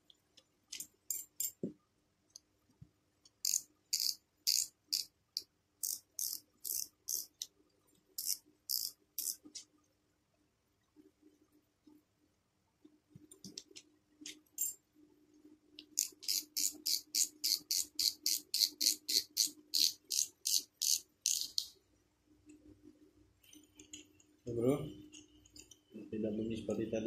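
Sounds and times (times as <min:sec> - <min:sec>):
fishing reel clicking: 0:03.4 - 0:05.1, 0:16.0 - 0:21.7.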